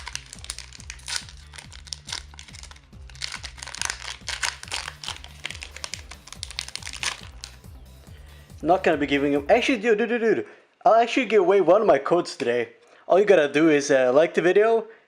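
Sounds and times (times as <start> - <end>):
foil wrapper crinkling: 0.0 - 7.7
background music with steady beat: 0.0 - 9.8.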